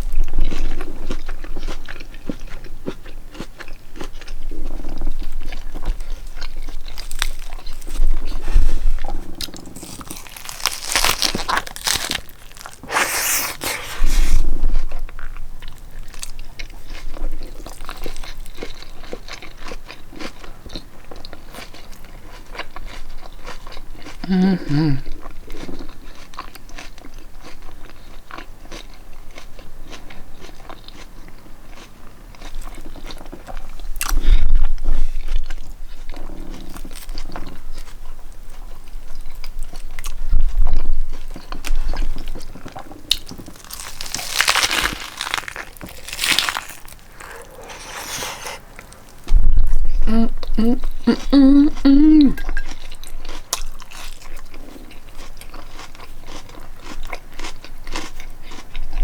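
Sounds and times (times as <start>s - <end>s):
chewing and mouth clicks: 0.0s - 37.9s, 38.5s - 59.0s
lettuce crunching bites: 6.4s - 14.5s, 43.1s - 49.3s
person humming: 12.9s - 14.3s, 24.2s - 25.1s, 50.0s - 52.5s.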